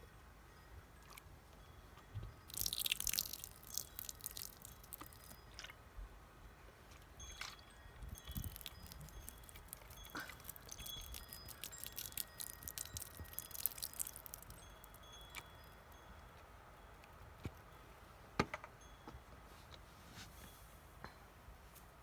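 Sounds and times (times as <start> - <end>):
water dripping: 2.4 - 5.8, 7.4 - 15.7.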